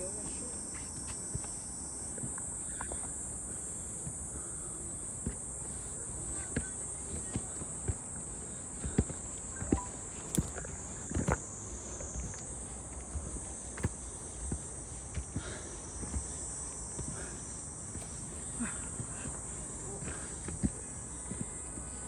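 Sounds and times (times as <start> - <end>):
high-pitched insect drone: 0.0 - 22.0
footsteps: 5.2 - 21.6.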